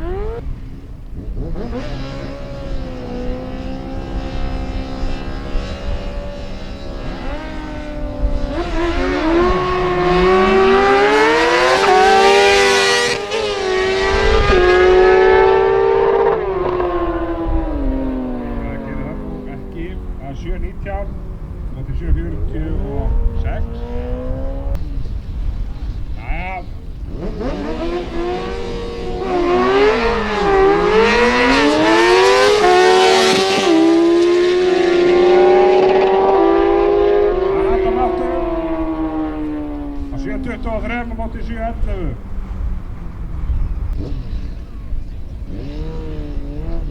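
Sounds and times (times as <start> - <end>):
racing motorcycle engines accelerating: 0.0 - 46.9.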